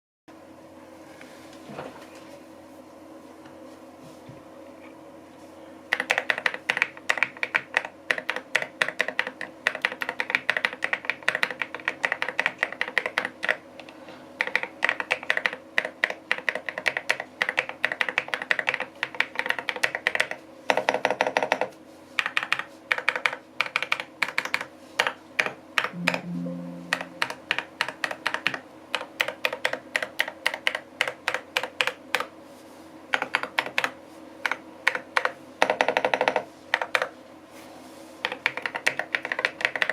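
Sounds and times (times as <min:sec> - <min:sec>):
mechanical keyboard typing: 0:05.9 - 0:13.6, 0:14.4 - 0:26.3, 0:27.1 - 0:32.2, 0:38.2 - 0:39.9.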